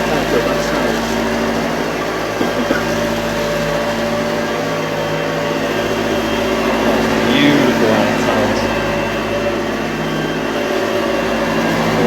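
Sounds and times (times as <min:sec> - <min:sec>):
vacuum cleaner motor humming: 0:00.0 - 0:12.0.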